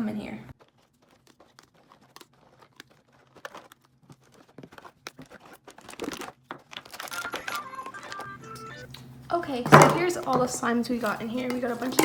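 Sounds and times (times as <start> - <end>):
packaging crinkling and tearing: 0.5 - 8.4.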